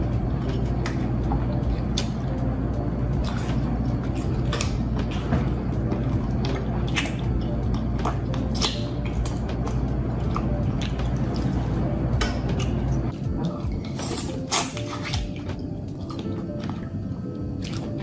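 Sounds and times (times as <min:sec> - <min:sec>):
low hum: 0:00.0 - 0:14.2
wet squishy eating: 0:03.1 - 0:17.0, 0:17.6 - 0:18.0.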